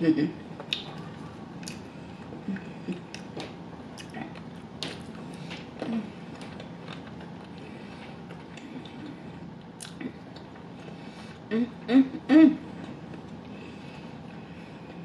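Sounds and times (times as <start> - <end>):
chewing and wet mouth sounds: 0.6 - 11.0.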